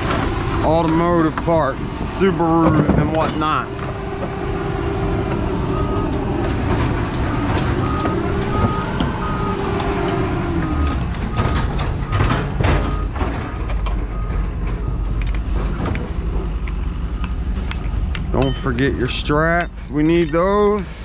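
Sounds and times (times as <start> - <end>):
heavy engine running: 0.0 - 21.0
reversing alarm beeping: 5.7 - 6.2, 7.7 - 9.7
sharp metal clanks: 18.4 - 21.0.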